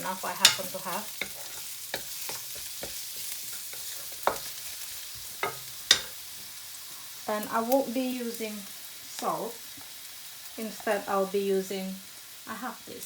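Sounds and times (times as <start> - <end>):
onion sizzling in oil: 0.0 - 13.0
utensil knocking against pan: 0.4 - 1.4, 5.4 - 6.1.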